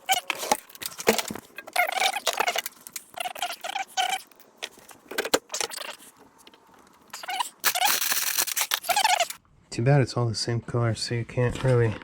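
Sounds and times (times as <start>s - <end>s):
stick scraping adhesive with squeaks: 1.6s - 4.4s, 5.4s - 6.2s, 7.1s - 9.4s.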